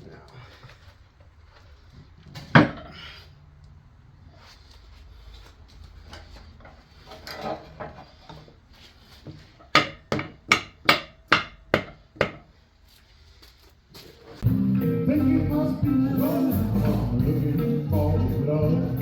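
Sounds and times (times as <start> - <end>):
hammer striking metal vise: 9.7 - 12.5.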